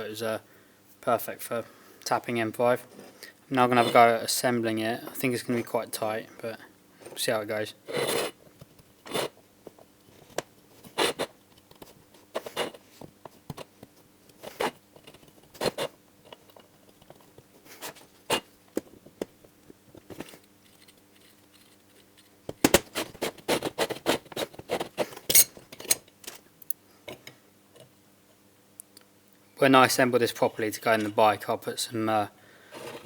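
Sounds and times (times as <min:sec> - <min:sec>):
faint steady hum: 0:00.0 - 0:33.0
metal parts clicking and knocking: 0:25.2 - 0:26.4.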